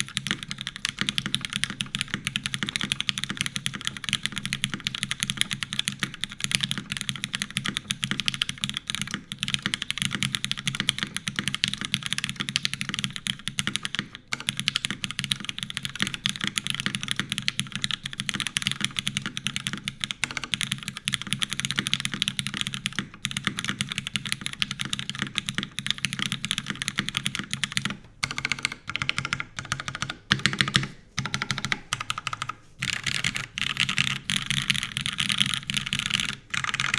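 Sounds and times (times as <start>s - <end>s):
typing on mechanical keyboard: 0.0s - 36.9s.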